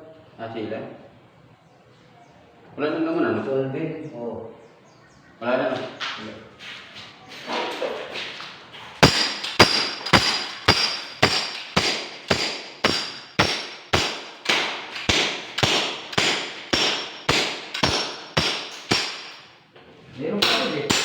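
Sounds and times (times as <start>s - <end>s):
hammer blows with metallic ring: 9.0s - 19.6s, 20.4s - 21.0s.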